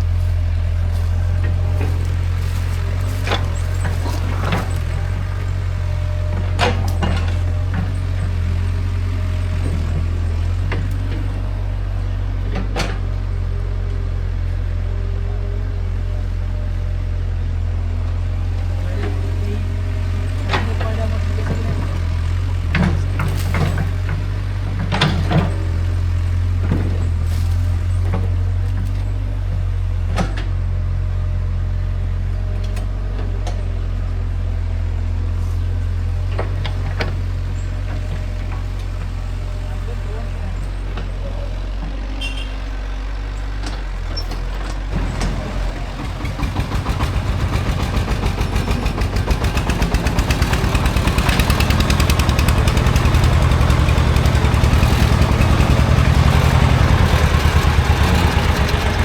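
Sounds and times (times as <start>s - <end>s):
construction machine engine droning: 0.0s - 59.0s
knocks and clanks: 0.6s - 11.4s, 18.6s - 28.8s, 43.6s - 59.0s.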